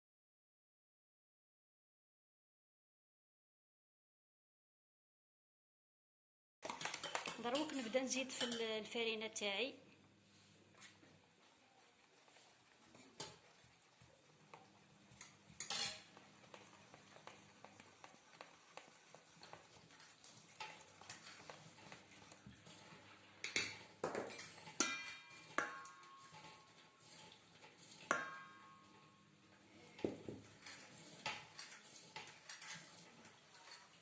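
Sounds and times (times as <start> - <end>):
spoon scraping in a mixing bowl: 6.7 - 8.9, 12.1 - 34.0.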